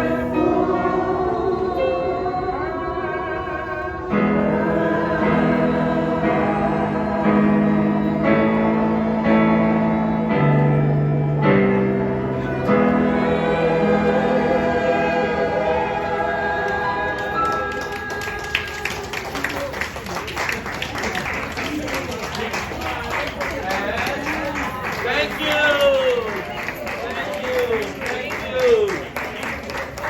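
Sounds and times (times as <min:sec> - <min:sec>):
choir singing slow song: 0:00.0 - 0:18.7.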